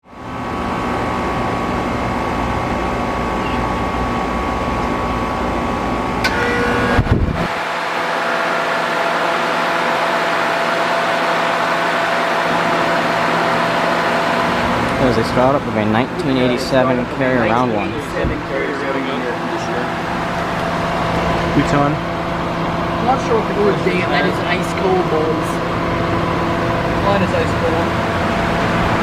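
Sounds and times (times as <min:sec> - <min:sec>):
air conditioner unit humming: 0:00.1 - 0:29.0.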